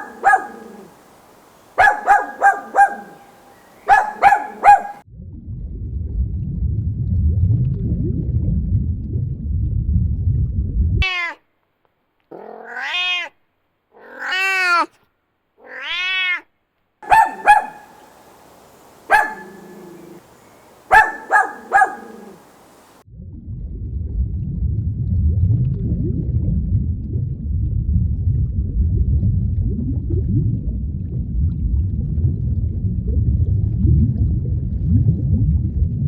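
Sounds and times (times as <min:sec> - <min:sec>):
short sharp calls: 0:00.0 - 0:05.0, 0:17.0 - 0:23.0
cat meowing: 0:11.0 - 0:11.4, 0:12.3 - 0:13.4, 0:14.0 - 0:14.9, 0:15.6 - 0:16.5.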